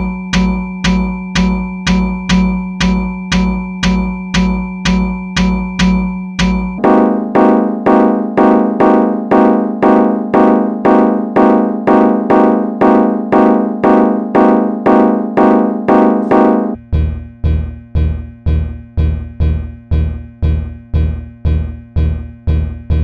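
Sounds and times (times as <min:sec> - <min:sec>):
fire alarm pulsing tone: 0:00.0 - 0:16.8
second pulsing alarm: 0:00.0 - 0:16.8.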